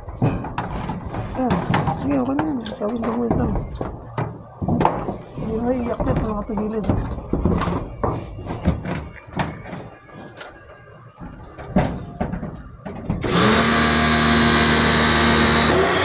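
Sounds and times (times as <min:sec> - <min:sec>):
equipment clicks and knocks: 0:00.0 - 0:14.7
machine motor hissing and humming: 0:13.2 - 0:16.0.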